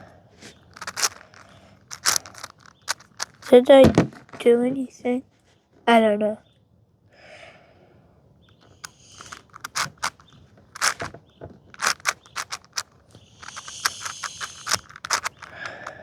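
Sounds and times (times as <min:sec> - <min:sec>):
plastic sliding and scraping: 0:00.4 - 0:04.2, 0:08.8 - 0:16.0
puzzle cube clicking: 0:00.6 - 0:03.6, 0:08.8 - 0:11.1, 0:11.8 - 0:16.0.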